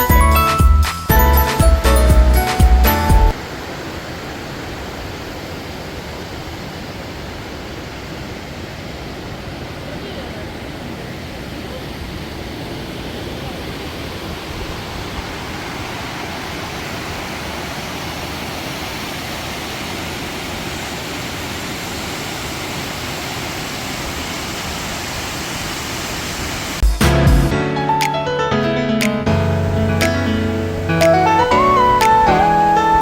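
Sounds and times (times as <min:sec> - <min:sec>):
guitar and piano music: 0:00.0 - 0:03.4, 0:26.8 - 0:33.0
stream water rushing: 0:01.3 - 0:26.8, 0:29.4 - 0:33.0.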